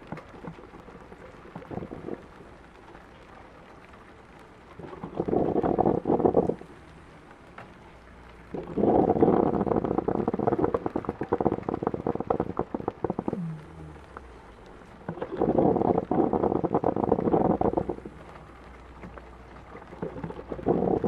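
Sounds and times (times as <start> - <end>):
coffee maker gurgling: 0.0 - 2.5, 4.8 - 7.2, 8.4 - 21.0
rain hissing: 0.0 - 21.0.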